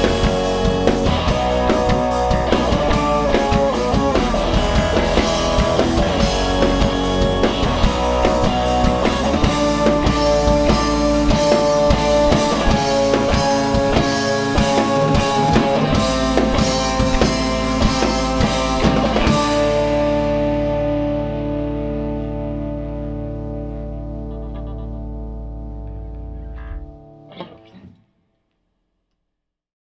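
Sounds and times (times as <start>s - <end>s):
drum kit beat: 0.0s - 21.0s
bass guitar: 0.0s - 28.0s
electric guitar: 0.0s - 28.2s.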